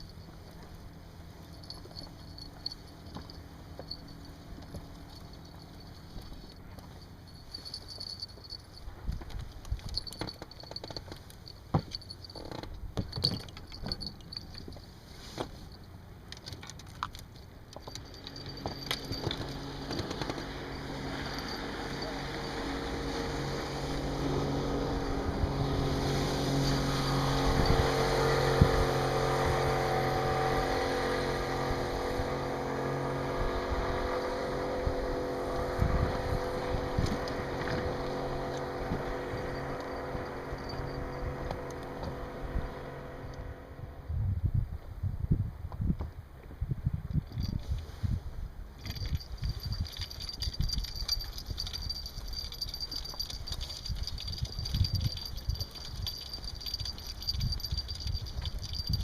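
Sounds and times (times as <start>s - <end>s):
outboard motor running: 0.0s - 44.1s, 48.8s - 59.0s
gear knocking in rubber boat: 7.4s - 14.9s, 17.7s - 22.8s, 48.8s - 59.0s.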